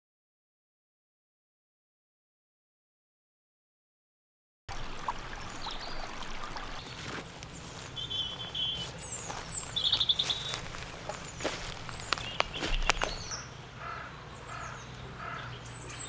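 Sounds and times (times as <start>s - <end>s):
songbirds chirping: 4.7s - 16.0s.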